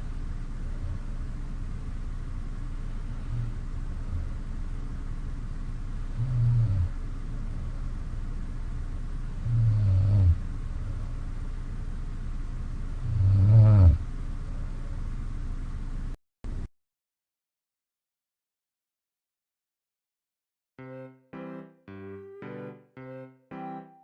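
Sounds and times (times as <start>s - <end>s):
steady low hum: 0.0s - 16.2s
person snoring: 6.2s - 7.0s, 9.4s - 10.4s, 13.1s - 14.0s.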